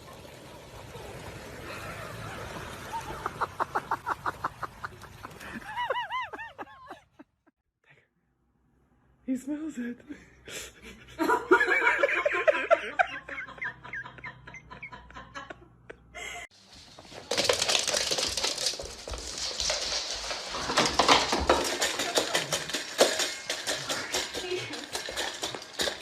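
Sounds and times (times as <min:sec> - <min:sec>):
person laughing: 0:01.7 - 0:07.5
clatter of small knocks and rattles: 0:16.6 - 0:26.0.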